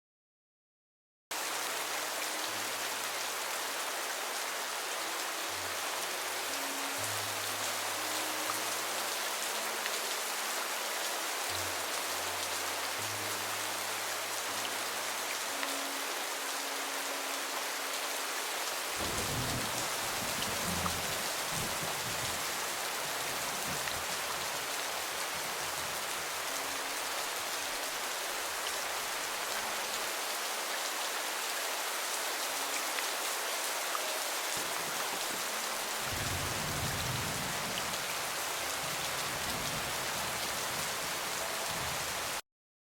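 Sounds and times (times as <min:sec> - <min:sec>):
rain hiss: 0:01.3 - 0:42.4
slow low melody: 0:11.0 - 0:17.9
thunder rumbling: 0:19.0 - 0:22.3.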